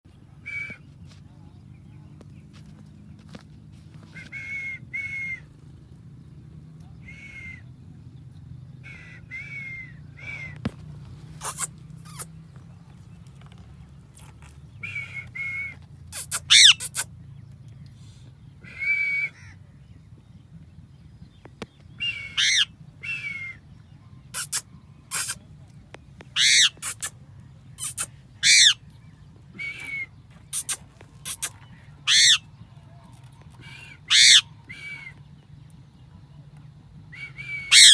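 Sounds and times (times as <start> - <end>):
parrot call sweeping up and down: 11.4 - 12.3, 24.4 - 25.4
parrot calling and screeching: 11.4 - 12.3, 16.1 - 17.1, 22.0 - 23.5, 24.3 - 25.4, 26.4 - 27.2, 27.8 - 28.8, 29.8 - 32.5, 33.8 - 35.1, 37.6 - 37.9.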